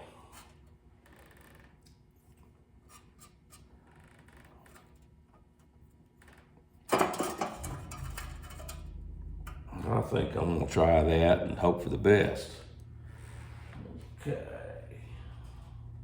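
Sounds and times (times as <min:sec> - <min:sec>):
low hum: 0:06.9 - 0:16.0.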